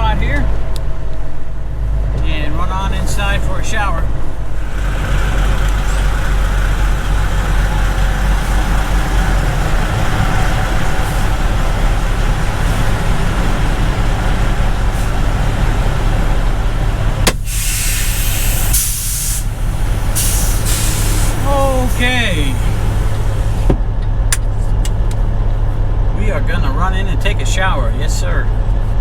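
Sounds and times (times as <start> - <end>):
diesel truck engine running: 0.0 - 29.0
air brakes hissing: 10.7 - 13.1, 14.7 - 15.6, 17.0 - 23.7.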